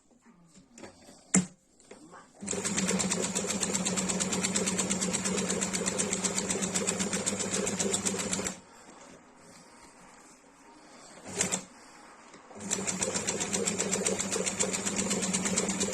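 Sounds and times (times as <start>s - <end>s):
sewing machine stitching: 2.4s - 8.6s, 11.2s - 11.7s, 12.6s - 15.9s.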